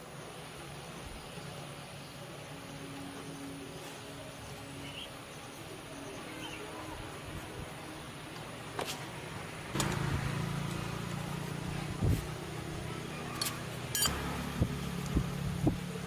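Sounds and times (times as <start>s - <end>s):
motor humming: 9.7s - 16.0s.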